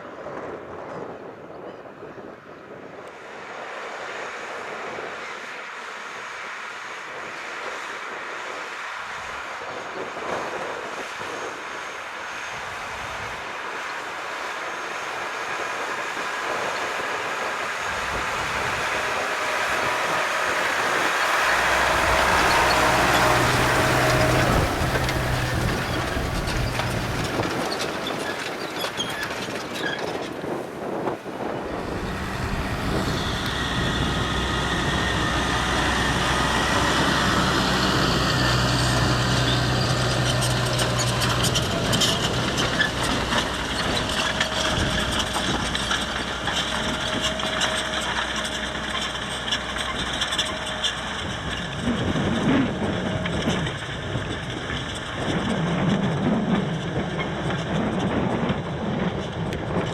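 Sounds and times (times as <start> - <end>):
tractor diesel engine running: 12.6 - 30.2, 30.8 - 59.9.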